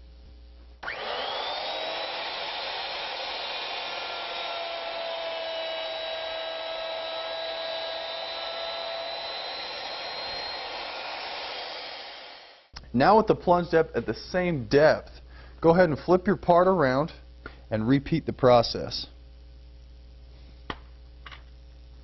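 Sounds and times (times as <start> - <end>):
router whining while cutting: 0.8 - 12.7.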